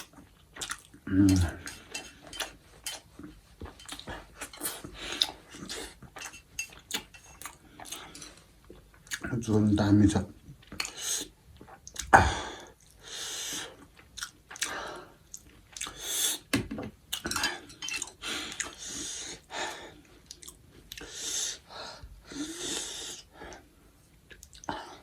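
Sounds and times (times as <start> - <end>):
wet chewing: 0.0 - 9.2, 13.8 - 16.0, 20.2 - 21.1.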